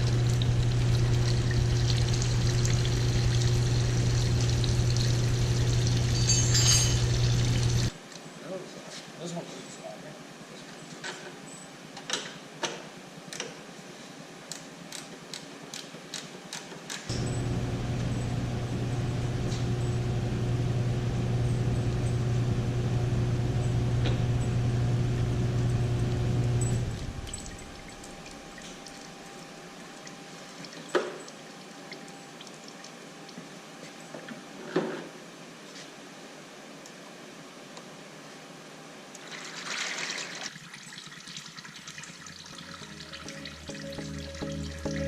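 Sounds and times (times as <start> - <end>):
electric motor hum: 0.0 - 7.9, 17.1 - 28.4.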